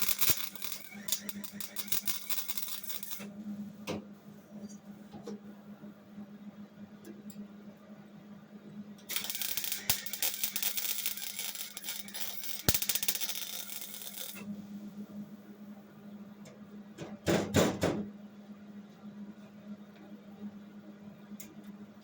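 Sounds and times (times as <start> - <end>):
welder arc crackling: 0.0 - 3.3, 9.0 - 14.5.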